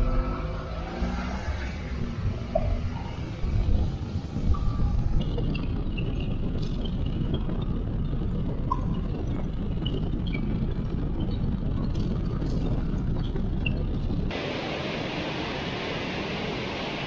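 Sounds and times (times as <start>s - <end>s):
muffled underwater stream rumble: 2.0s - 14.7s.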